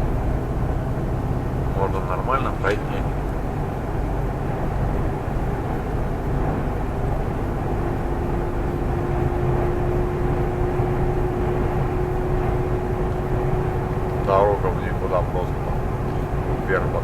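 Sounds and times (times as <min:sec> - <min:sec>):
truck engine and road rumble: 0:00.0 - 0:17.0.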